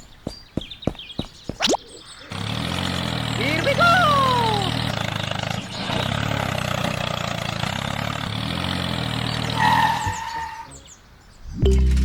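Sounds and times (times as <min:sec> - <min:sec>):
tractor engine running: 0:02.0 - 0:10.3, 0:11.5 - 0:12.0
short higher tone: 0:11.5 - 0:12.0.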